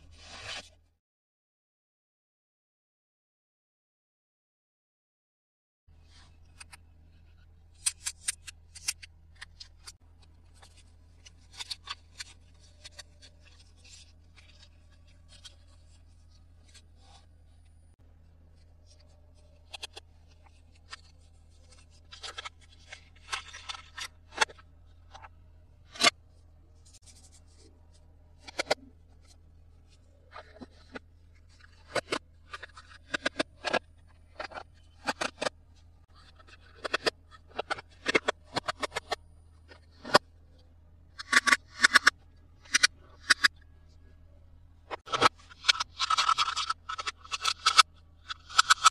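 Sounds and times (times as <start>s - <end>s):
steady low hum: 5.9s - 48.4s
plastic toy pieces clicking: 45.5s - 48.9s.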